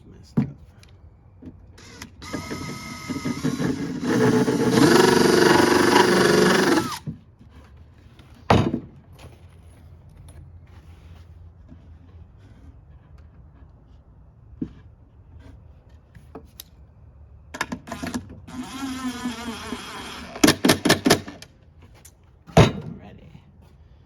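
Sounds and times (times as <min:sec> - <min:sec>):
power drill drilling into wood: 0:01.8 - 0:07.1, 0:17.9 - 0:20.8.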